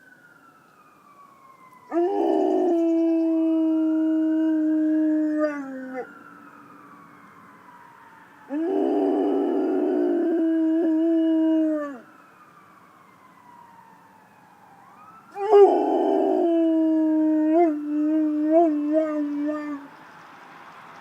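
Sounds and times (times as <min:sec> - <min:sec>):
faint ambulance siren wailing: 0:00.0 - 0:20.9
dog howling: 0:01.9 - 0:06.1, 0:08.5 - 0:12.0, 0:15.4 - 0:19.9.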